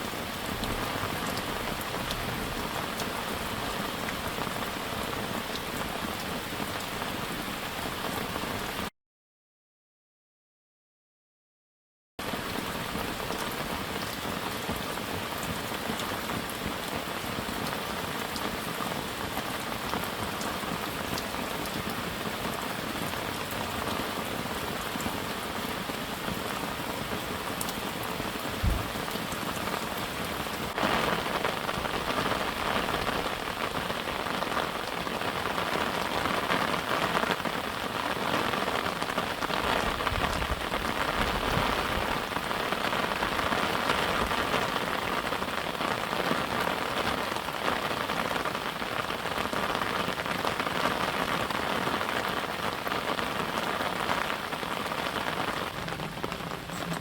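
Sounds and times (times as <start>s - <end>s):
steady rain: 0.0s - 8.9s, 12.2s - 57.0s
soft thump: 28.6s - 29.0s.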